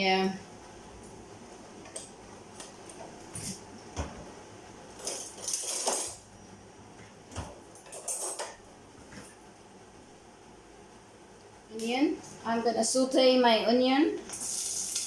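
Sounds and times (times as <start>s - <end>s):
cookware and utensils clattering: 5.0s - 6.3s, 7.7s - 8.6s, 14.3s - 15.0s
rattling rush in frying pan: 14.4s - 15.0s.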